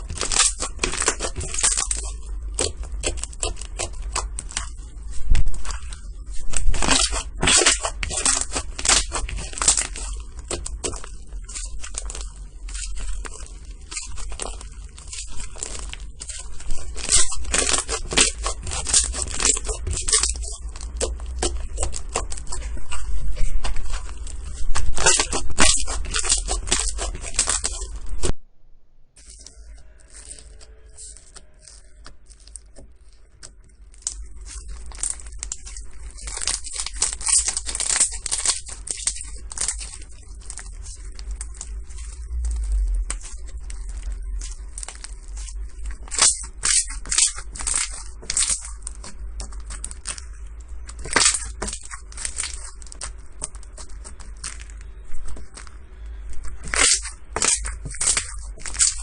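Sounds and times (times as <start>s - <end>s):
slime crackling and popping: 0.0s - 28.4s, 29.2s - 59.0s.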